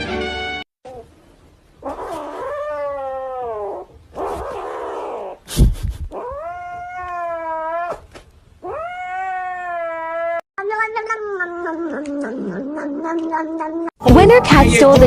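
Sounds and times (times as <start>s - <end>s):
music: 0.0s - 0.6s, 14.0s - 15.0s
cat yowling: 1.8s - 5.4s, 6.2s - 13.9s.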